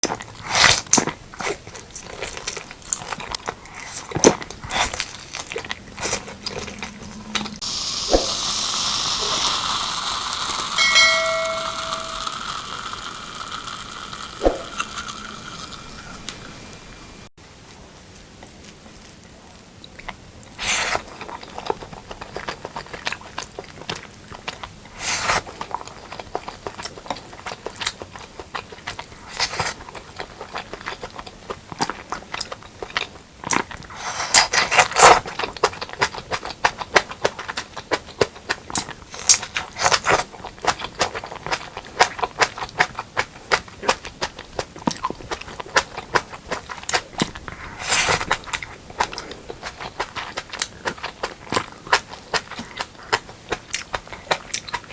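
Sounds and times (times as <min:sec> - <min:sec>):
wet chewing: 0:00.0 - 0:17.3, 0:25.4 - 0:54.9
loud noisy eating bursts: 0:04.7 - 0:17.3, 0:45.7 - 0:54.5.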